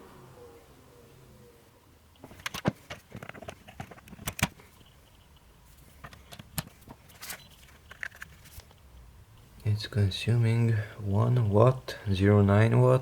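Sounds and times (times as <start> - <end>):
plastic plugs clicking and knocking: 2.2 - 4.6.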